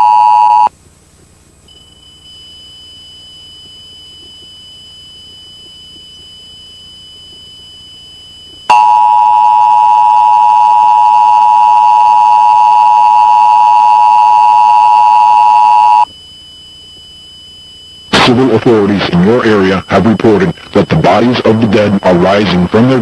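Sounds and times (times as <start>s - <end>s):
faint high-pitched whine: 1.6s - 23.0s
two-tone alert tone: 8.7s - 16.1s.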